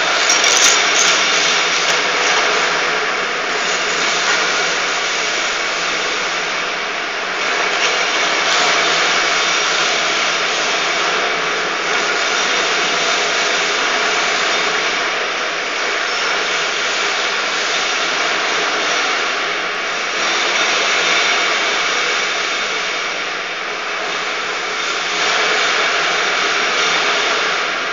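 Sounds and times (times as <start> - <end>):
floor grinding machine whirring: 0.0 - 4.1.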